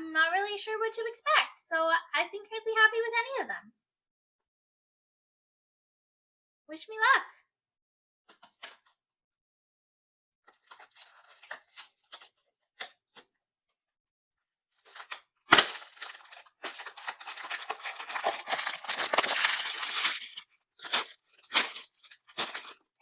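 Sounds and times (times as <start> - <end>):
packaging rustling: 10.5 - 13.2, 14.8 - 23.0
wrapping tearing and crinkling: 10.5 - 13.2, 14.8 - 23.0.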